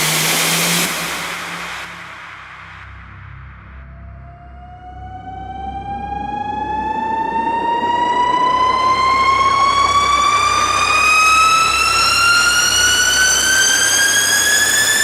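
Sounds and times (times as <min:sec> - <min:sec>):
hiss of noise: 0:00.0 - 0:02.9
rising whine sound effect: 0:00.0 - 0:15.0.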